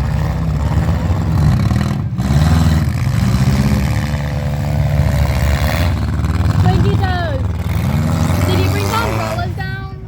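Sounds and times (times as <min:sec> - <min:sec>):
car engines revving loudly: 0:00.0 - 0:10.0.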